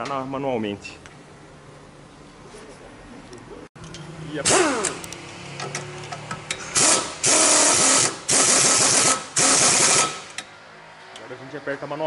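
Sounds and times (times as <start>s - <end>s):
impact wrench rattling: 5.7s - 10.4s.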